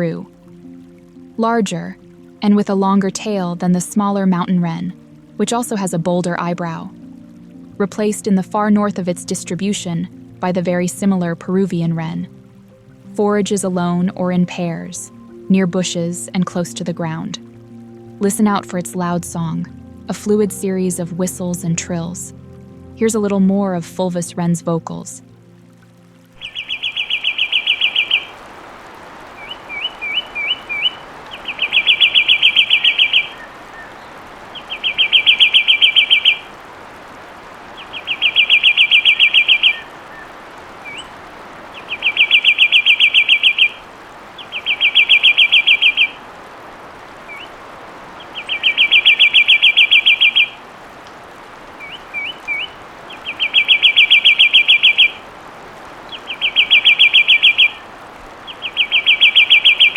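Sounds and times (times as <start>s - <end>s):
steady hiss: 0.0s - 59.9s
wren singing fast trill: 26.4s - 28.4s, 29.4s - 36.5s, 37.8s - 39.9s, 41.7s - 43.8s, 44.4s - 46.2s, 48.2s - 50.6s, 51.8s - 55.2s, 56.1s - 57.8s, 58.5s - 59.9s.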